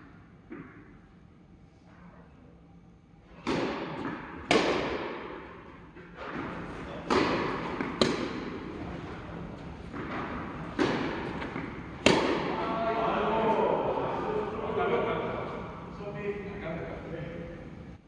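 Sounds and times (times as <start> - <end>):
tennis racket hitting ball: 3.4 - 14.6.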